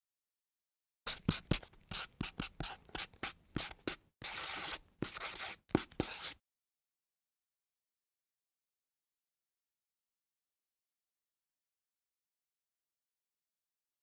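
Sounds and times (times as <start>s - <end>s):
marker writing on cardboard: 1.1s - 6.4s.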